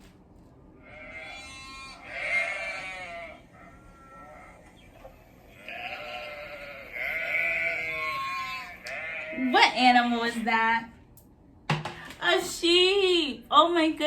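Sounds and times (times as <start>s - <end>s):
sheep bleating: 0.8s - 4.7s, 5.5s - 9.5s.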